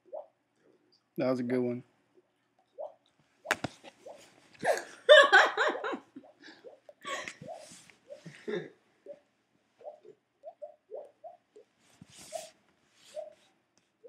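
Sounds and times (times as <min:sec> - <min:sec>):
people laughing: 0:04.6 - 0:07.4.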